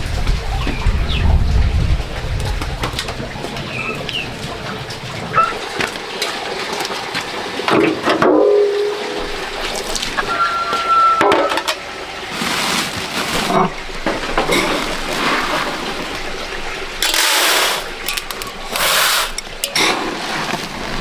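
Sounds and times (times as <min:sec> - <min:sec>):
low rumble: 0:00.0 - 0:05.2
outdoor background noise: 0:00.0 - 0:21.0
birds chirping: 0:03.6 - 0:04.4.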